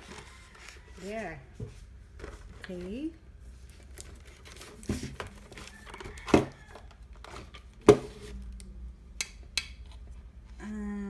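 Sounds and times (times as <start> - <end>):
packaging rustling: 3.6 - 7.9.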